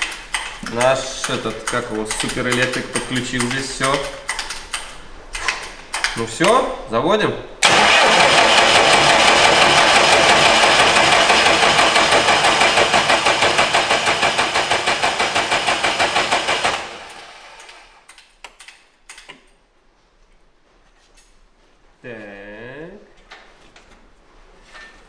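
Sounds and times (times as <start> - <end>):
diesel engine starter cranking: 7.6 - 18.0.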